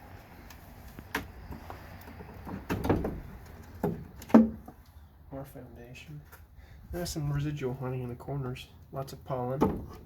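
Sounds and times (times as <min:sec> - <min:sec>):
wooden frames scraping: 0:00.9 - 0:04.8.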